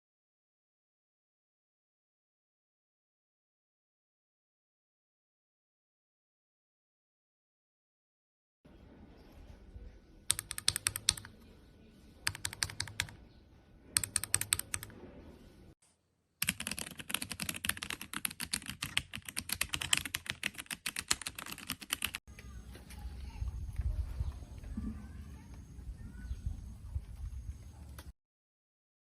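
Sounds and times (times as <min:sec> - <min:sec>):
mechanical keyboard typing: 0:10.3 - 0:11.4, 0:12.2 - 0:13.2, 0:14.0 - 0:15.0, 0:16.4 - 0:22.2.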